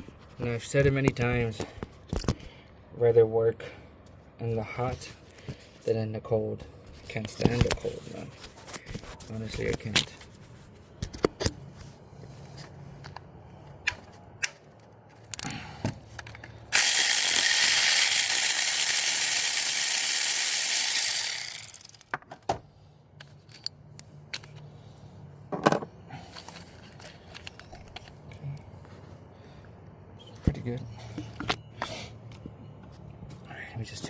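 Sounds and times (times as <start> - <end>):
ratchet metallic clicks: 16.7 - 22.1.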